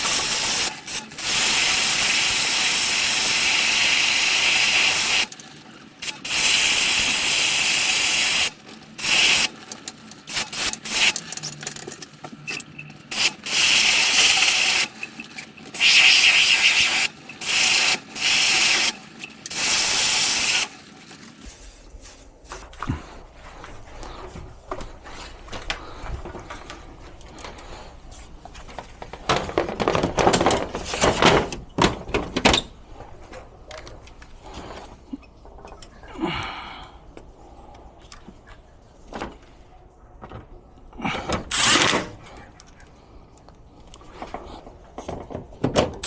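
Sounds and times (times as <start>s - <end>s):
high-pressure spray hissing: 0.0s - 5.4s, 6.0s - 9.5s, 13.1s - 20.8s.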